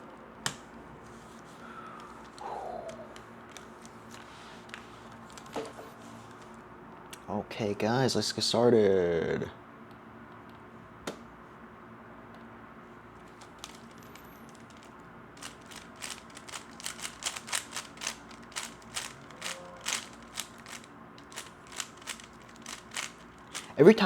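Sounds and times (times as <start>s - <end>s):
puzzle cube clicking: 14.5s - 23.7s.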